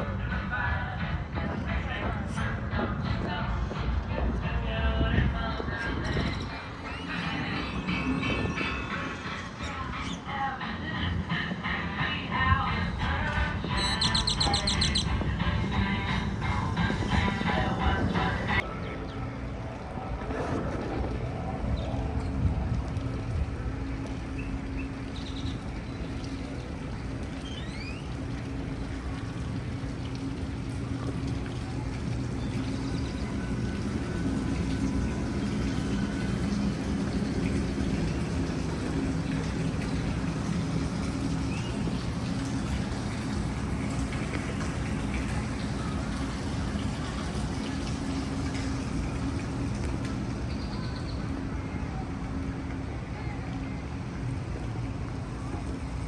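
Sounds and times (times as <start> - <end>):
low hum: 0.0 - 56.0
rising bird chirps: 6.2 - 10.3, 13.7 - 15.2, 27.4 - 28.2.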